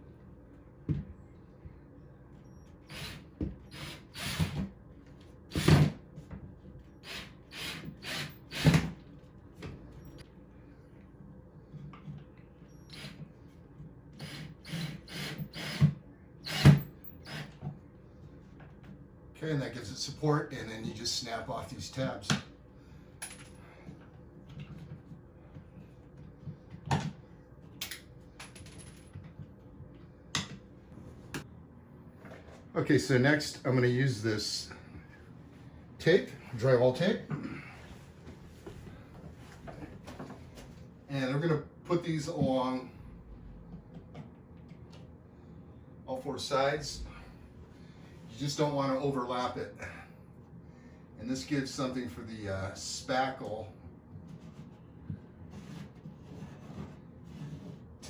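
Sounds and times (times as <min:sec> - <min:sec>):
screws driven into drywall: 0:02.9 - 0:04.7, 0:07.0 - 0:09.0, 0:14.2 - 0:17.6.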